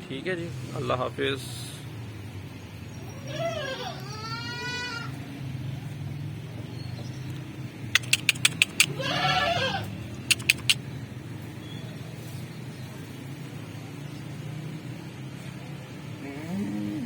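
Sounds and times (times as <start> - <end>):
goat bleating: 8.0 - 10.7.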